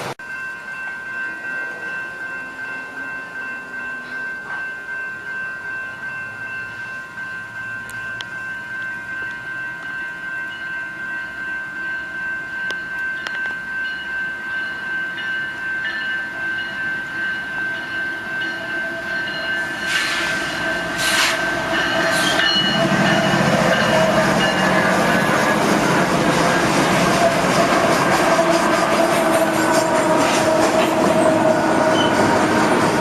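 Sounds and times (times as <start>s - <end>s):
diesel locomotive engine: 0.0s - 33.0s
railroad crossing bell ringing: 0.0s - 33.0s
brief hissing bursts: 21.0s - 21.4s.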